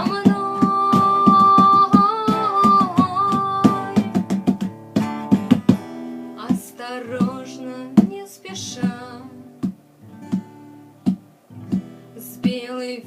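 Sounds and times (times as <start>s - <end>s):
woman singing: 0.0s - 4.4s, 6.4s - 9.5s, 12.1s - 13.0s
acoustic guitar strumming: 0.0s - 13.0s.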